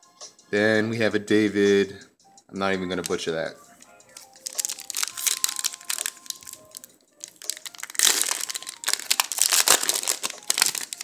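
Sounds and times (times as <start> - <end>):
foil wrapper crinkling: 4.2 - 11.0.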